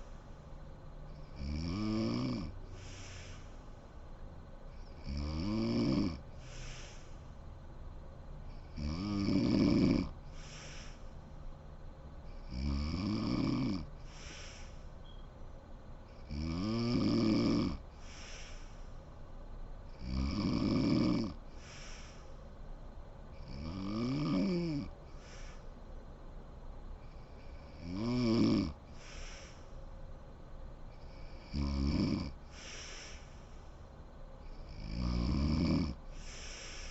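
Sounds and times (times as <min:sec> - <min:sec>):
woman snoring: 0:01.2 - 0:03.4, 0:04.8 - 0:07.0, 0:08.5 - 0:11.0, 0:12.4 - 0:14.7, 0:16.2 - 0:18.7, 0:19.9 - 0:22.2, 0:23.4 - 0:25.5, 0:27.4 - 0:29.6, 0:31.0 - 0:33.3, 0:34.5 - 0:36.9
breathy exhale: 0:02.6 - 0:04.0, 0:06.3 - 0:07.4, 0:10.2 - 0:11.4, 0:14.0 - 0:15.2, 0:17.9 - 0:19.1, 0:21.5 - 0:22.5, 0:25.1 - 0:25.9, 0:28.9 - 0:30.0, 0:32.4 - 0:33.9, 0:36.1 - 0:36.9.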